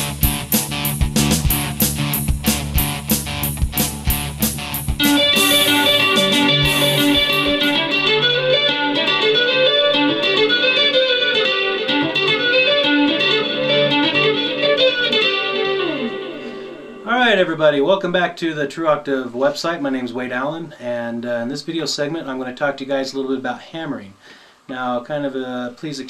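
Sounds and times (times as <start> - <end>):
electric guitar: 0.0 - 17.1.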